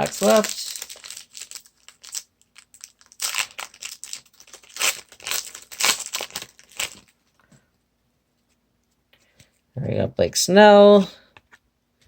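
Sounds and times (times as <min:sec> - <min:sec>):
plastic wrapper tearing and crinkling: 0:00.0 - 0:07.2.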